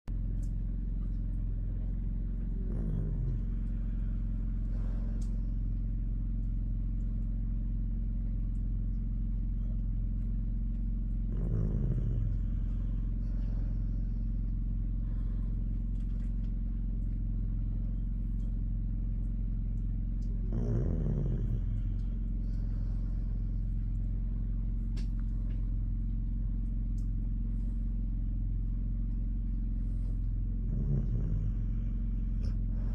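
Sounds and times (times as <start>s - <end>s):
steady low hum: 0.1s - 32.9s
low vocal sleep sounds: 2.4s - 5.8s, 11.2s - 15.7s, 20.2s - 24.0s, 29.8s - 32.9s.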